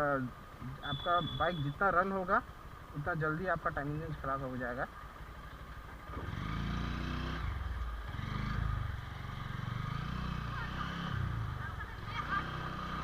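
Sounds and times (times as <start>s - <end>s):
motorcycle engine revving: 3.0s - 13.0s.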